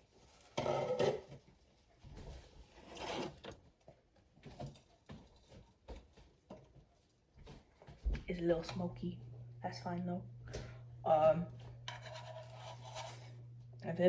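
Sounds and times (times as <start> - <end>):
cookware scraping and clunking: 0.5 - 1.4, 11.8 - 13.4.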